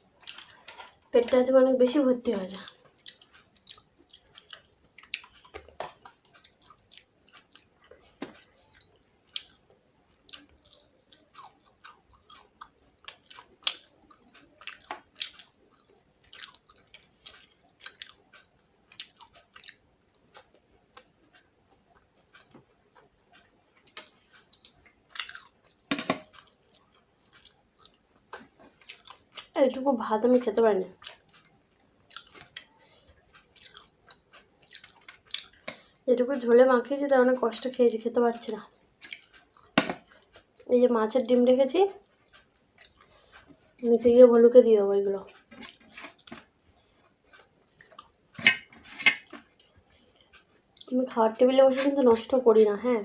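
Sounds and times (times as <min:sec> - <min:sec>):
person chewing with mouth clicks: 0:00.1 - 0:01.0, 0:02.6 - 0:29.6, 0:31.0 - 0:36.0, 0:39.0 - 0:40.7, 0:42.0 - 0:43.6, 0:45.3 - 0:51.0.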